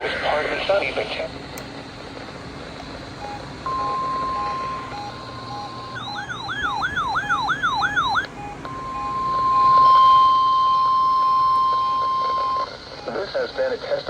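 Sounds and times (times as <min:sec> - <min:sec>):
siren-like wail: 0:03.2 - 0:13.2
steady electronic alert tone: 0:03.2 - 0:13.8
faint short beeps: 0:08.4 - 0:13.8.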